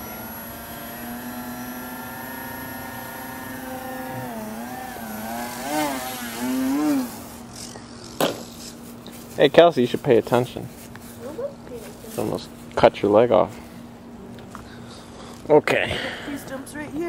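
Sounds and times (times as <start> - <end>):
electric motor and propeller whining: 0.0 - 8.9.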